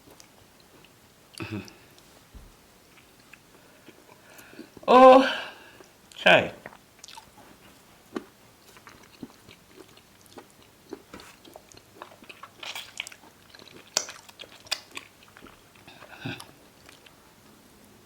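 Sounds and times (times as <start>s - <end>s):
person chewing food: 2.9s - 4.9s, 5.6s - 17.2s
wet mouth clicks and lip smacks: 6.6s - 7.3s, 8.1s - 15.6s.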